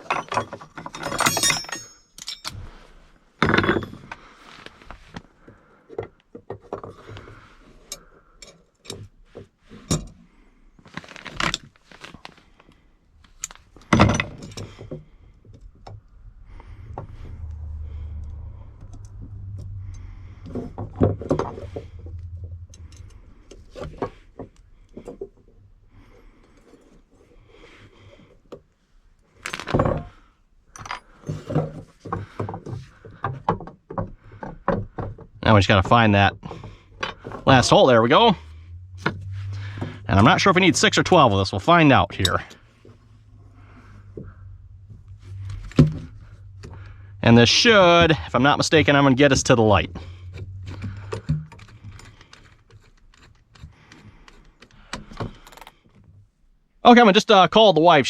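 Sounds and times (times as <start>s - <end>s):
drill bits clinking and scraping: 0.0s - 5.0s, 10.8s - 17.2s, 29.3s - 32.8s, 35.6s - 43.0s, 45.0s - 56.1s
low steady hum: 11.5s - 33.1s, 34.2s - 57.0s.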